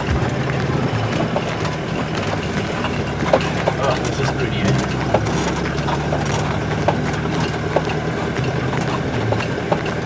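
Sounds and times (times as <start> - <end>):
body and suspension rattles: 0.0 - 10.0
van engine hum: 0.0 - 10.0.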